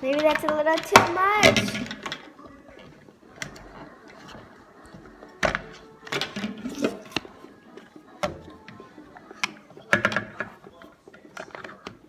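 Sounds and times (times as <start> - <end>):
faint music: 0.0 - 12.0
plastic pieces tapping and knocking: 0.0 - 12.0.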